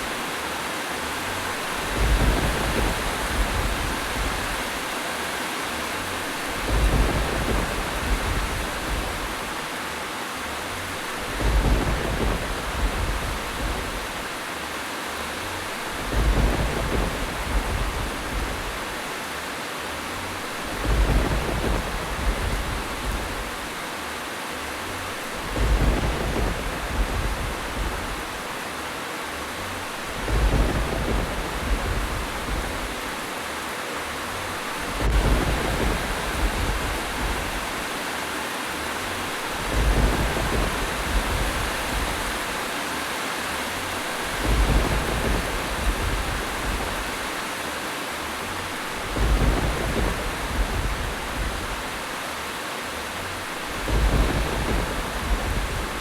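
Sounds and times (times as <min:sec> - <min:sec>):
heavy rain: 0:00.0 - 0:56.0
deep rumble: 0:01.4 - 0:05.0, 0:06.3 - 0:09.6, 0:10.8 - 0:14.4, 0:15.5 - 0:19.1, 0:20.3 - 0:23.8, 0:25.1 - 0:28.6, 0:29.5 - 0:33.4, 0:34.2 - 0:38.0, 0:39.0 - 0:42.7, 0:43.9 - 0:47.4, 0:48.6 - 0:52.1, 0:53.2 - 0:56.0.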